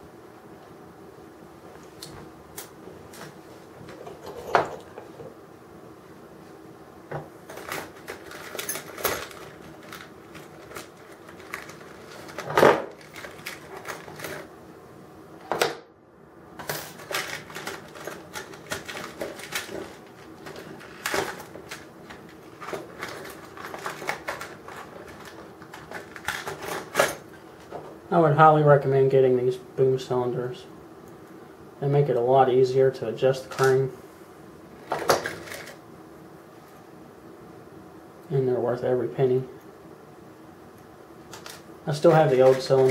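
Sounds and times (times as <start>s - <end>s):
model parts and tools clattering: 17.0s - 27.7s, 41.4s - 42.9s.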